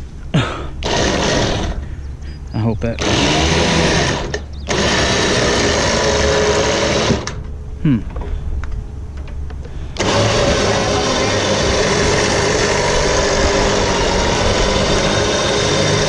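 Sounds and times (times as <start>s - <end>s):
electric winch motor running: 0.8s - 2.0s, 2.8s - 7.5s, 9.8s - 16.0s.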